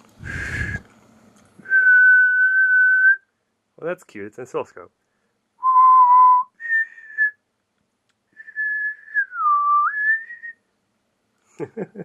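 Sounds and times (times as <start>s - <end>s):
person whistling: 1.6s - 3.3s, 5.6s - 7.4s, 8.4s - 10.6s.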